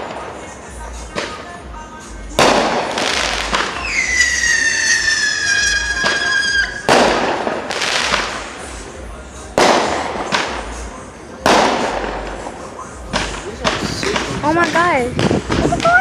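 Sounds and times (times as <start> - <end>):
firework bangs: 0.0 - 16.0
whistling firework: 2.4 - 8.4.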